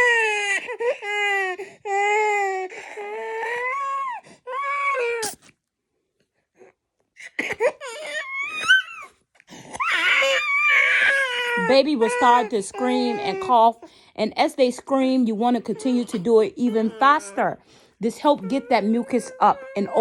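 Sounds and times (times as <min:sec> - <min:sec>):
toddler crying: 0:00.0 - 0:05.3, 0:07.2 - 0:09.1, 0:09.8 - 0:13.9, 0:15.4 - 0:20.0.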